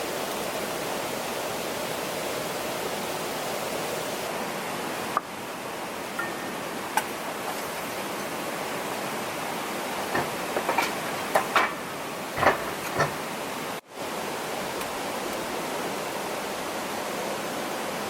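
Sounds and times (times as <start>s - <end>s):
short knocks and clicks: 10.0s - 11.8s, 12.4s - 13.3s.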